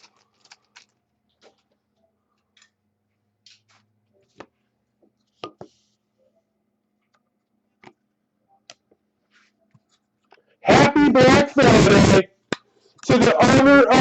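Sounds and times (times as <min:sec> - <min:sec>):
trading cards being handled: 0:00.0 - 0:01.8.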